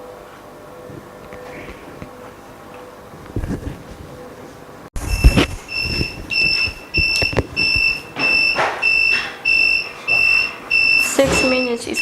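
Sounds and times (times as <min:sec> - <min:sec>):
electronic buzzer beeping: 0:05.0 - 0:12.0.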